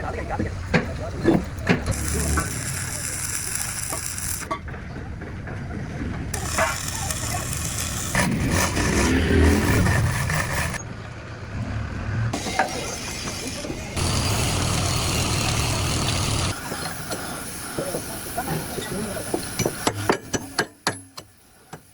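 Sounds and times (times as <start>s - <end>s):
engine running: 0.2s - 16.7s
hiss: 1.9s - 4.5s, 12.4s - 21.9s.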